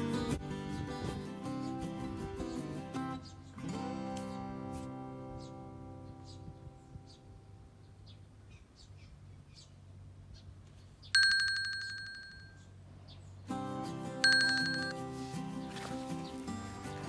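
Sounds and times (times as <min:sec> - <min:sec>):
background music: 0:13.5 - 0:17.0
bell-like chimes: 0:14.2 - 0:15.0.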